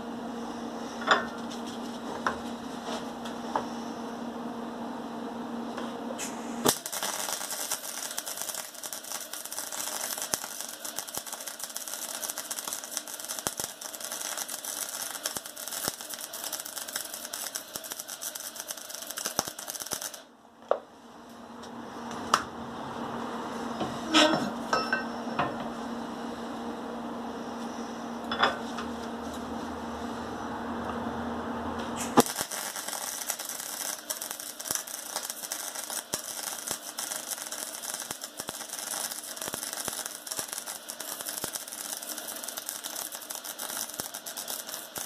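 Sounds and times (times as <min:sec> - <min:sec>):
steady hum: 0:00.0 - 0:45.0
arc welding crackling: 0:06.2 - 0:20.3, 0:31.9 - 0:45.0.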